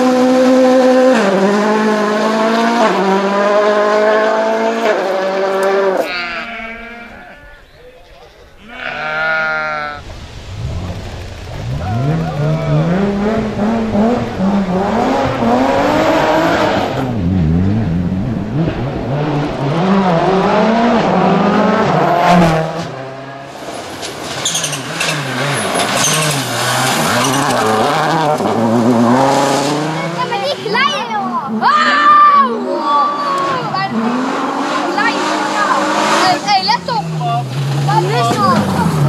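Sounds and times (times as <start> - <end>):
rally car engine revving: 0.0 - 7.0, 8.7 - 39.0
tyre squeal: 24.4 - 27.8.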